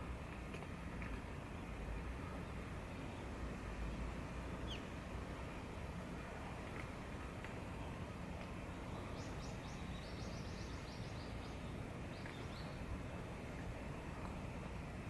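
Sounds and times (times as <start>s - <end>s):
outdoor background noise: 0.0s - 15.0s
small bird singing: 8.8s - 12.8s.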